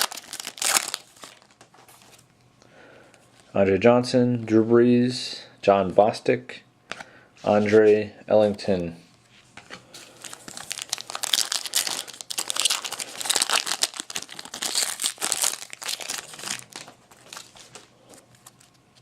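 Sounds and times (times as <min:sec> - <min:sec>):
foil wrapper tearing and crinkling: 0:00.0 - 0:01.6, 0:10.0 - 0:17.8.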